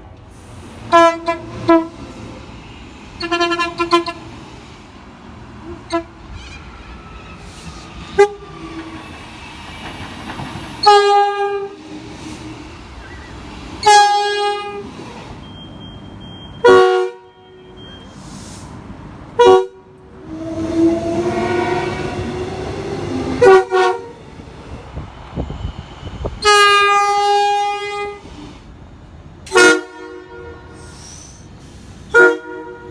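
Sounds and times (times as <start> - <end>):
train rumbling past: 0.0 - 32.9
train horn blasts: 0.9 - 2.0, 3.2 - 4.3, 5.7 - 6.2, 8.2 - 8.5, 10.8 - 11.8, 13.8 - 14.9, 16.6 - 17.8, 19.4 - 24.2, 26.3 - 28.2, 29.5 - 30.9, 32.1 - 32.9.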